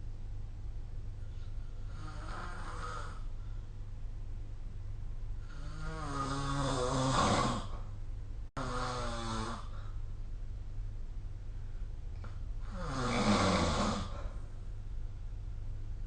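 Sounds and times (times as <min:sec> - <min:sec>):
steady low hum: 0:00.0 - 0:16.0
person snoring: 0:01.8 - 0:03.3, 0:05.4 - 0:07.8, 0:08.6 - 0:10.0, 0:12.6 - 0:14.4.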